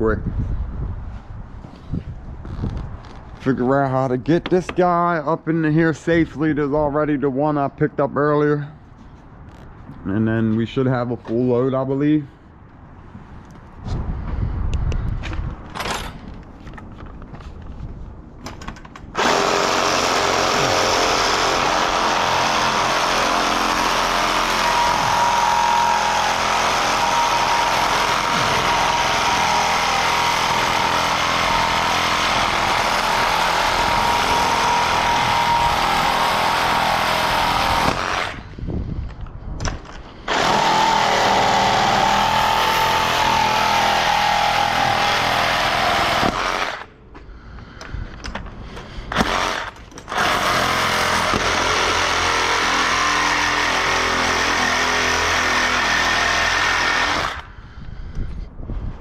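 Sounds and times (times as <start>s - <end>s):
power saw cutting metal: 19.2s - 38.5s, 40.3s - 46.9s, 49.1s - 57.5s.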